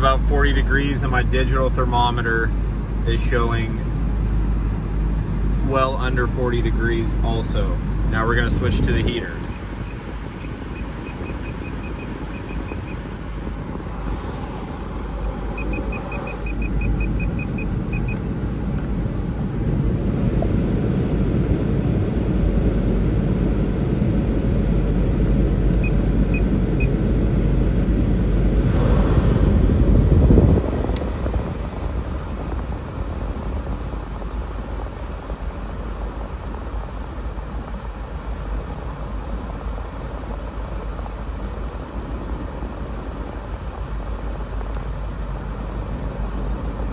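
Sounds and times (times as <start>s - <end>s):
blower rushing through vents: 0.0s - 46.9s
car engine idling: 0.0s - 46.9s
quick high beeps: 9.8s - 13.0s, 15.6s - 18.2s.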